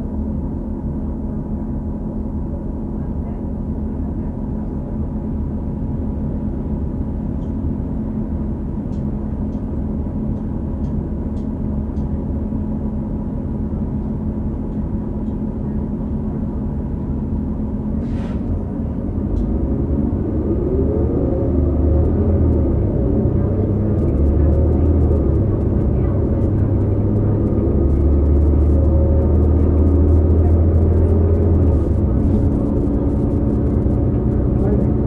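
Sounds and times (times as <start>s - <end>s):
bus engine rumble and whine: 0.0s - 35.0s
air brake hiss: 18.0s - 18.5s
transmission bearing noise: 23.7s - 35.0s.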